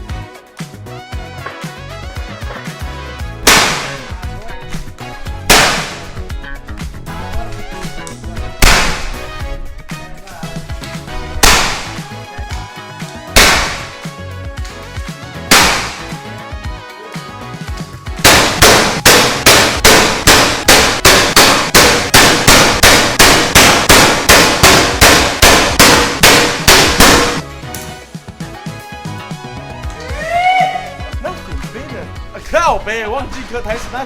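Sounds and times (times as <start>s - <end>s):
loud gunshots: 3.4s - 4.4s, 5.0s - 6.3s, 8.5s - 9.5s, 11.4s - 12.2s, 13.4s - 14.1s, 15.5s - 16.3s, 18.2s - 27.4s
rapid sharp hits: 3.4s - 6.9s, 7.6s - 12.6s, 13.4s - 14.1s, 15.5s - 16.3s, 18.2s - 27.4s.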